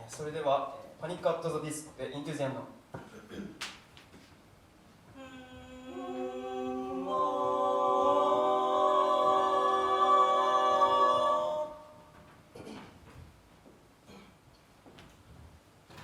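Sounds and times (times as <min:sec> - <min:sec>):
male group singing a chord: 0:05.2 - 0:12.1.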